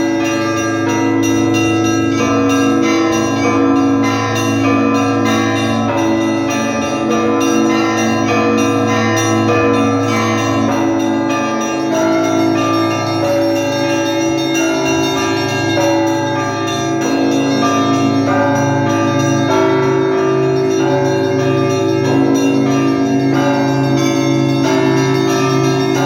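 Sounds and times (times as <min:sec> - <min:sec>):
church bells ringing: 0:00.0 - 0:26.0
low hum of large bells: 0:00.0 - 0:26.0.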